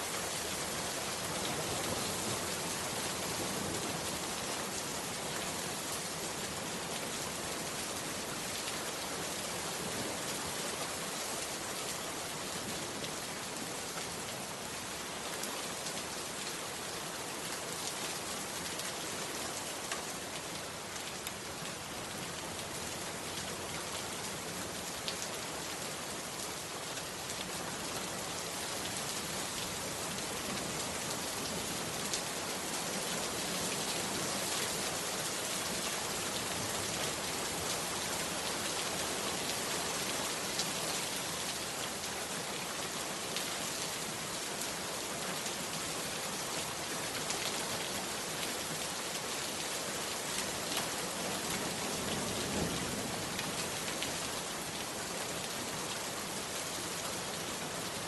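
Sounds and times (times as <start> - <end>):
heavy rain: 0.0 - 58.0.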